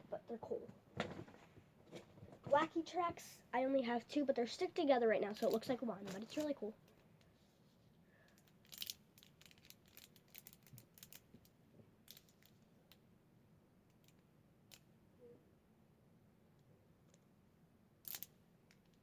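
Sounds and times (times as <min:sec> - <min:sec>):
plastic toys clicking: 0:05.2 - 0:07.0, 0:08.3 - 0:11.5, 0:12.1 - 0:12.6, 0:18.0 - 0:19.0.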